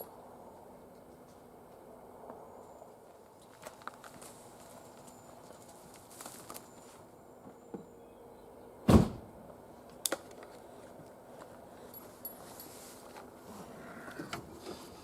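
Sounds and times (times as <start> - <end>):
handling clicks and rustling: 3.1 - 6.9, 9.8 - 13.4
loud thump: 8.9 - 9.3.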